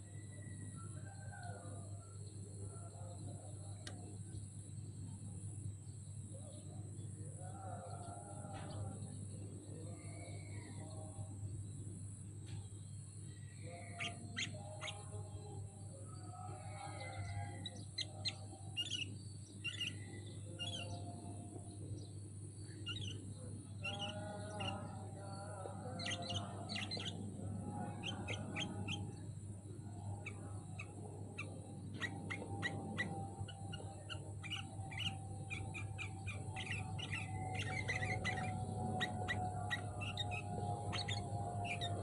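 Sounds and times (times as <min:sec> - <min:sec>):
bird chirping: 0:00.0 - 0:42.0
low hum: 0:02.9 - 0:42.0.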